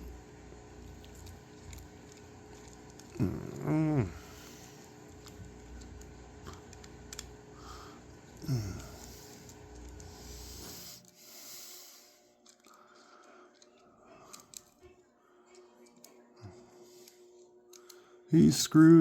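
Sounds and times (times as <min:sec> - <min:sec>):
short low vocal sound: 0:03.1 - 0:04.2.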